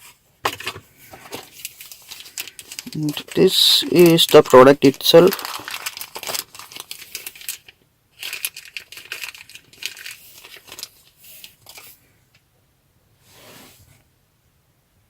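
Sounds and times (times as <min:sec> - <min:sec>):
plastic packaging crinkling: 0:00.5 - 0:12.0.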